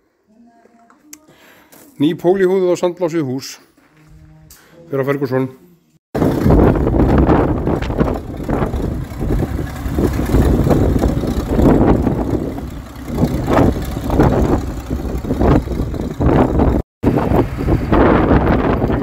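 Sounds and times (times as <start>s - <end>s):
vehicle engine rumbling: 6.2s - 19.0s.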